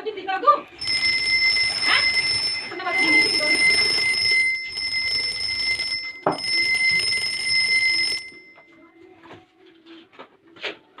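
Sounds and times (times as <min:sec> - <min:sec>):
doorbell buzzer tone: 0:00.8 - 0:08.6.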